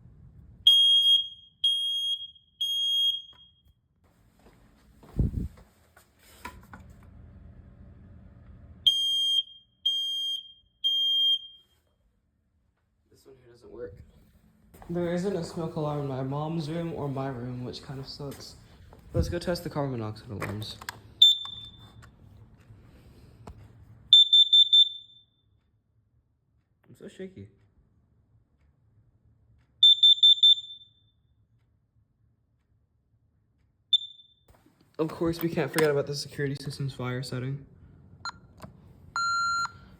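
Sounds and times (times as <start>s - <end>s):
smoke alarm beeps: 0.6s - 3.8s, 8.8s - 11.9s, 21.1s - 22.3s, 24.1s - 25.7s, 29.8s - 31.4s, 33.9s - 34.5s, 39.2s - 39.9s.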